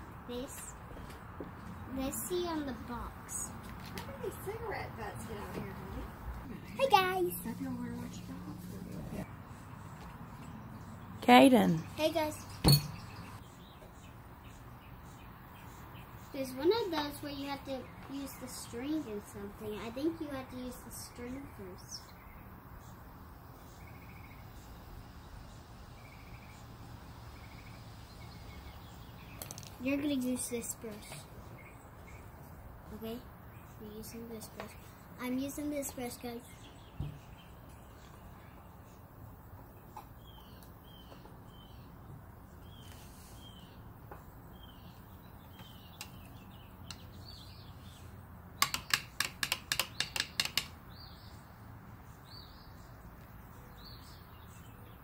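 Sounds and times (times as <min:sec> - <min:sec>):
bird chirping: 0:09.4 - 0:55.0
sharp clicks: 0:48.6 - 0:50.8.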